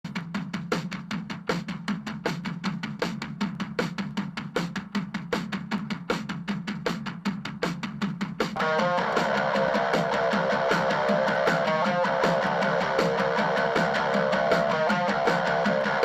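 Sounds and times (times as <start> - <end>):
bass drum and snare beat: 0.0 - 16.0
rock guitar: 8.6 - 16.0.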